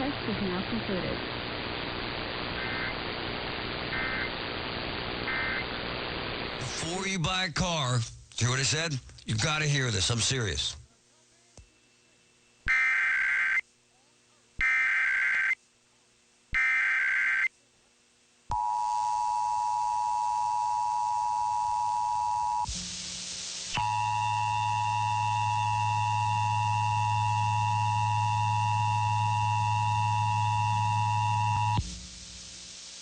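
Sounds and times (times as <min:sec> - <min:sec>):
warbling data bursts: 0:02.5 - 0:03.1, 0:03.9 - 0:04.4, 0:05.2 - 0:05.9.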